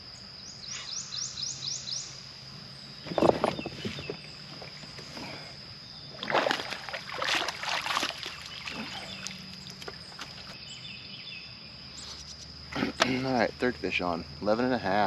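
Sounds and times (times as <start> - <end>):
water splashing at a kayak: 6.1 - 10.6.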